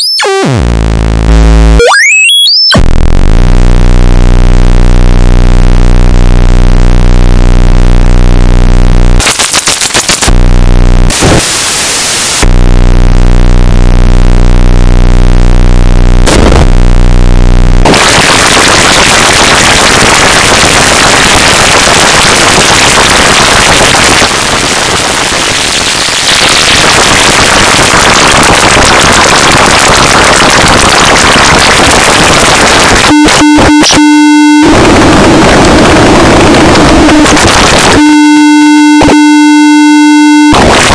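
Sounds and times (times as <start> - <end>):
chopped high-pitched tonal buzz: 0.0 - 40.9
harsh static noise: 0.0 - 40.9
low electric buzz: 10.2 - 21.3, 33.1 - 34.8, 38.0 - 40.5.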